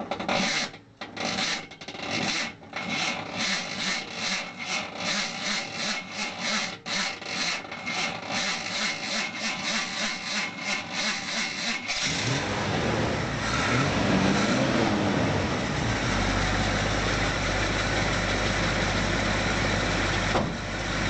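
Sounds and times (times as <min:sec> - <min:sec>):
engine idling: 0:05.4 - 0:21.0.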